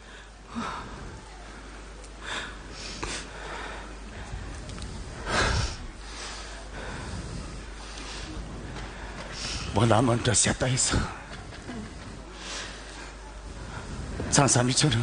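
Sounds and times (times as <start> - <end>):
low electrical hum: 0.0 - 15.0
person sniffing and breathing heavily: 2.5 - 9.8.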